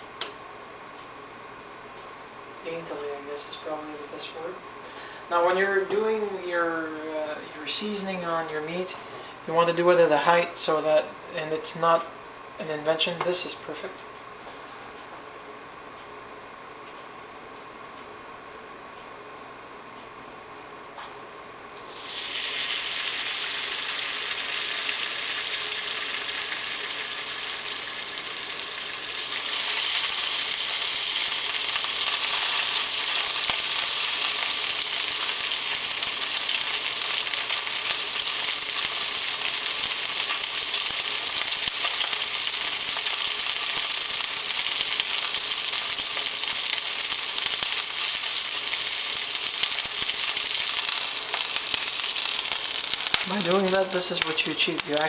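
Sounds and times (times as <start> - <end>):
meat sizzling in a skillet: 21.7 - 55.0.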